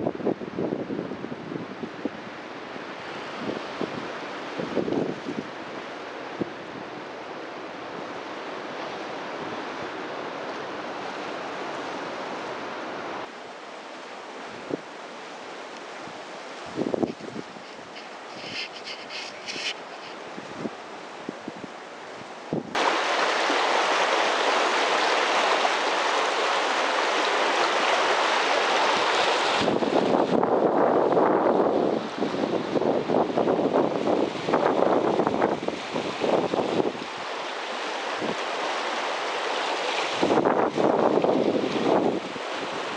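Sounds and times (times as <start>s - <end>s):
water rushing: 2.0s - 42.9s.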